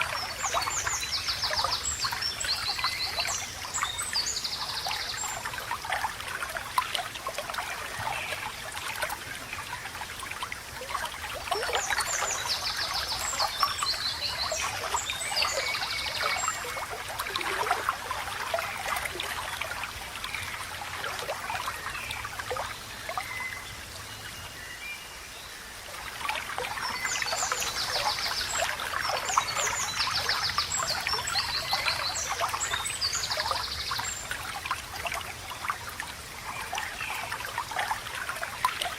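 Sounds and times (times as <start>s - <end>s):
birds twittering: 0.0s - 6.1s, 10.9s - 20.6s, 21.5s - 34.5s
shallow water babbling: 0.0s - 38.9s.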